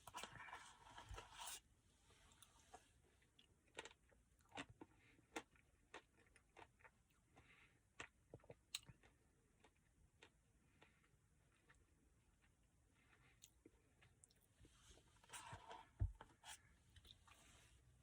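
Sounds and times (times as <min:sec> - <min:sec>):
person chewing ice cream: 0:03.2 - 0:14.5
soft rustling: 0:14.6 - 0:17.9.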